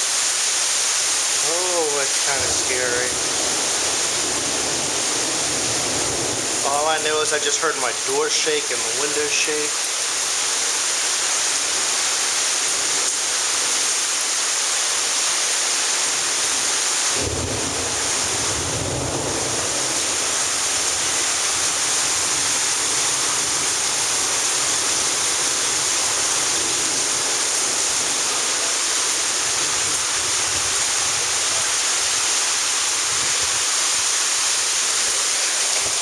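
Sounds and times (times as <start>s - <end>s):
heavy rain pouring: 0.0s - 36.0s.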